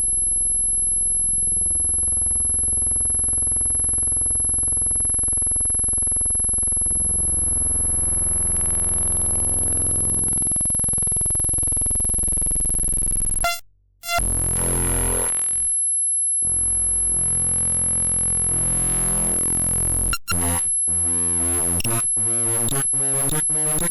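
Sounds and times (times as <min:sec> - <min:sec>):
constant high whine: 0:00.0 - 0:23.9
harsh buzzy drone: 0:13.4 - 0:15.7, 0:16.4 - 0:23.9.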